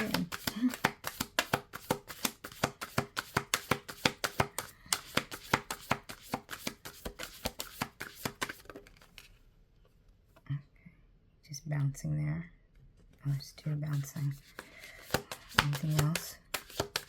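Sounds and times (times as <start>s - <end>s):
cards being shuffled: 0.0s - 9.4s, 13.9s - 17.0s.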